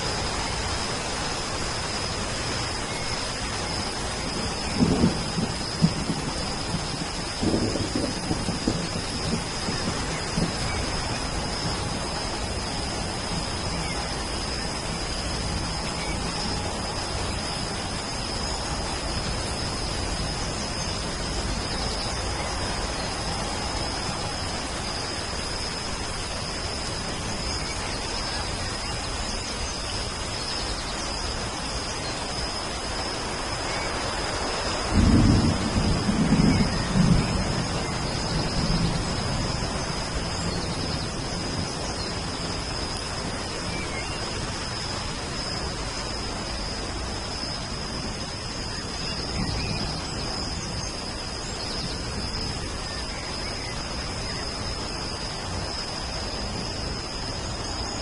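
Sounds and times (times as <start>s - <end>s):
steady rain: 0.0s - 58.0s
thin steady high tone: 0.0s - 58.0s
thunder rumble: 4.3s - 26.2s, 34.4s - 43.8s.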